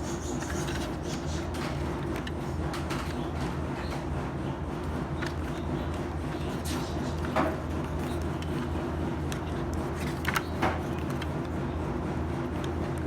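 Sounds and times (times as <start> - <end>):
packaging rustling: 0.2 - 3.2, 5.2 - 11.6.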